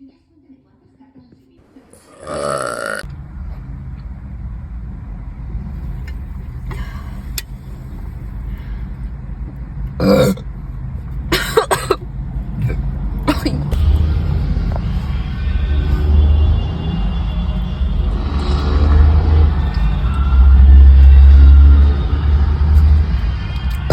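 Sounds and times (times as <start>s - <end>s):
woman burping: 2.0s - 3.1s, 10.0s - 10.4s, 11.3s - 12.0s, 12.6s - 13.8s
steady low rumble: 3.0s - 23.9s.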